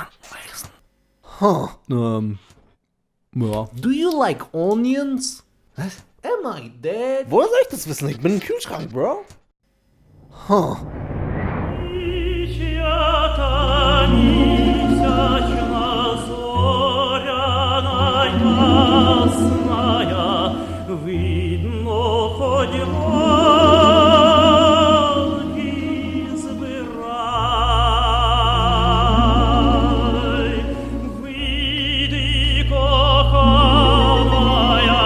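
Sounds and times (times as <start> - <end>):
operatic singing with vibrato: 11.8 - 35.0
orchestral accompaniment: 11.9 - 35.0.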